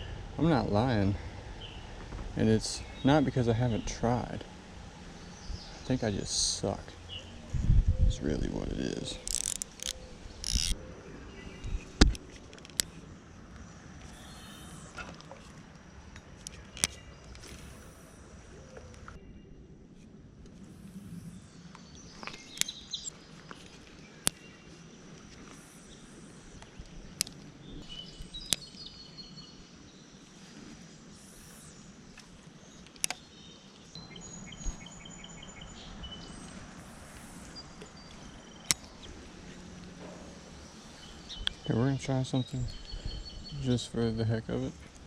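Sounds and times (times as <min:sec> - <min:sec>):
birds chirping: 0:00.0 - 0:19.9, 0:20.6 - 0:45.0
insects buzzing: 0:08.2 - 0:19.3, 0:20.2 - 0:45.0
sharp clicks: 0:09.2 - 0:10.8, 0:11.6 - 0:13.0, 0:16.2 - 0:17.5, 0:32.2 - 0:33.2, 0:36.9 - 0:39.1.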